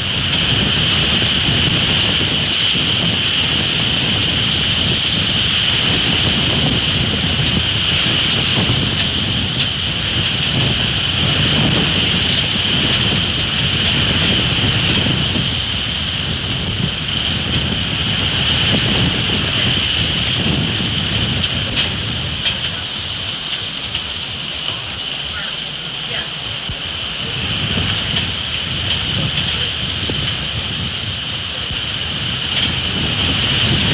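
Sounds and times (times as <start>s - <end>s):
gusty wind on microphone: 0.0s - 33.9s.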